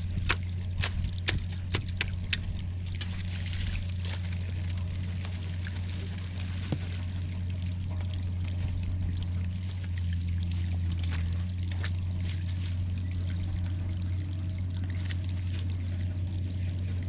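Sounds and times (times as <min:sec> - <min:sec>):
constant low hum: 0:00.0 - 0:17.0
water splashes: 0:00.0 - 0:17.0.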